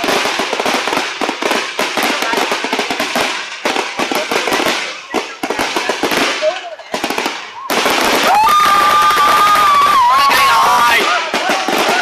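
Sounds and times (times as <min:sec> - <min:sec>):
fireworks crackling and popping: 0:00.0 - 0:12.0.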